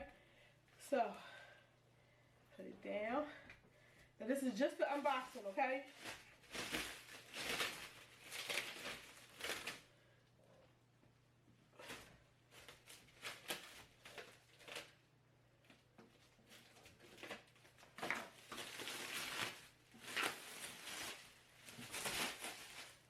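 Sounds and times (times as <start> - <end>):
packing material rustling: 4.9 - 10.0, 11.8 - 23.0.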